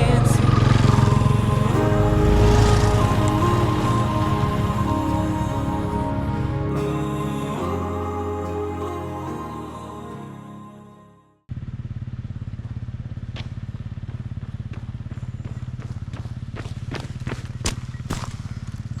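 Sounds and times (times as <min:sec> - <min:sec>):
background music: 0:00.0 - 0:11.4
motorcycle engine idling: 0:11.5 - 0:19.0.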